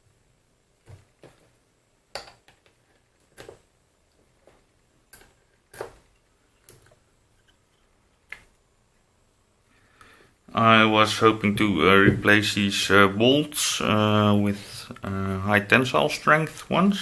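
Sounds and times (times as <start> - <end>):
metal parts clinking: 2.2 - 3.6.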